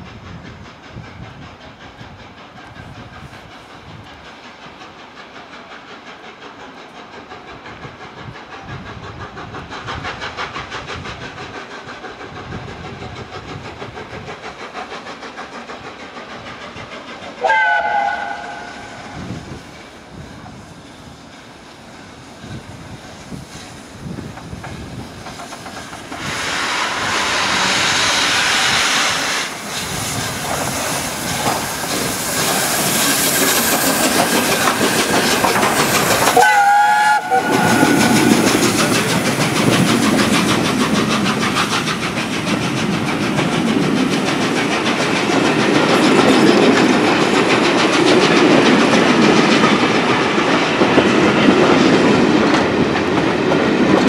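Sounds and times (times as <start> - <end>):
steam locomotive passing: 0.0 - 54.0
wheels clacking over rail joints: 0.0 - 54.0
train whistle: 17.4 - 19.3, 26.2 - 29.5, 36.4 - 38.5.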